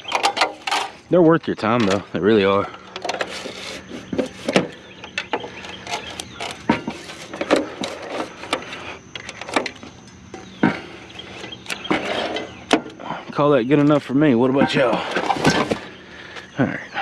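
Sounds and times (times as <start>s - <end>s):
appliance parts clattering: 0.0s - 14.0s, 14.6s - 16.5s.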